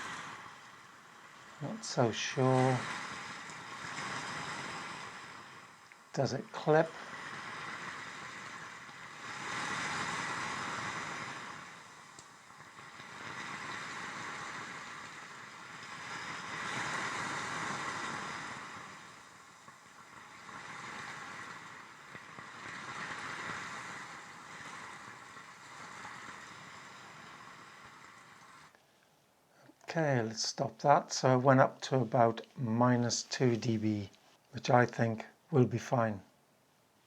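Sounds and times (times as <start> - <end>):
waves washing onto pebbles: 0.0 - 28.7.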